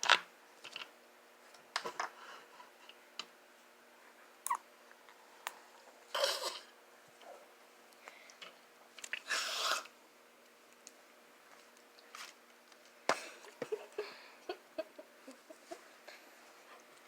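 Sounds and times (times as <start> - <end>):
person slurping and sipping: 9.1 - 9.9.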